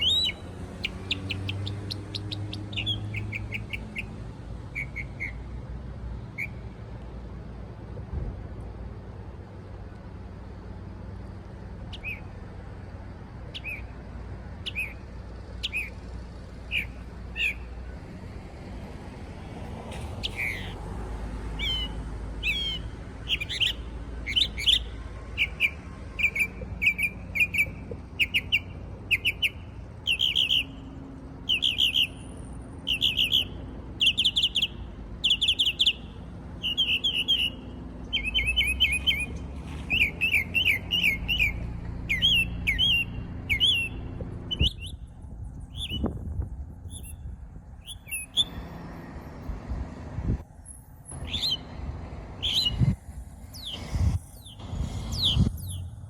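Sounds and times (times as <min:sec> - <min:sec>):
songbird chirps and trills: 0:00.0 - 0:07.1, 0:09.9 - 0:18.2, 0:19.9 - 0:46.2, 0:46.8 - 0:49.6, 0:50.4 - 0:56.0.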